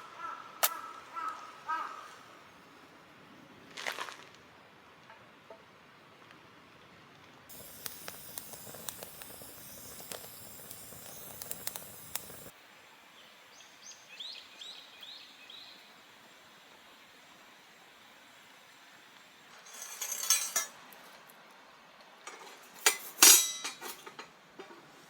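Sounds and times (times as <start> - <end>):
bird calling: 0.0 - 2.2
outdoor ambience: 0.0 - 25.0
wood fire crackling and popping: 7.5 - 12.5.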